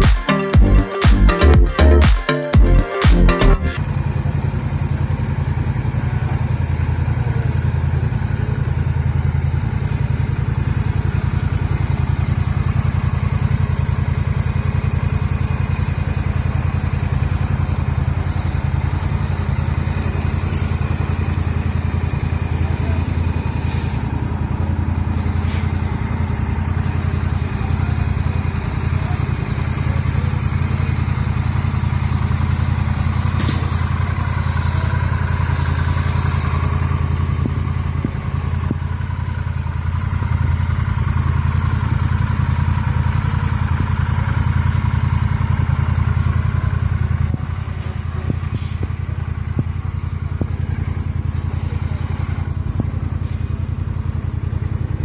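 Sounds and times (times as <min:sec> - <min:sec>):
motorcycle engine idling: 0:03.7 - 0:55.0.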